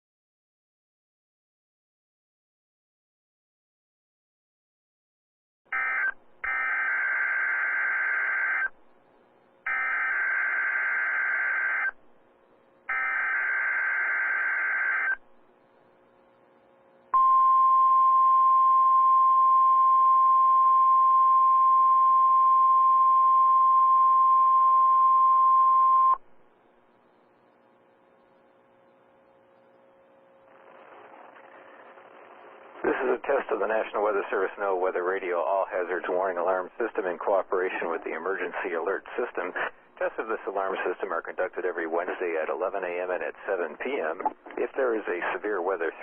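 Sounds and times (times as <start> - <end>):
steady alarm tone: 5.7 - 8.7, 9.6 - 12.0, 12.9 - 15.2.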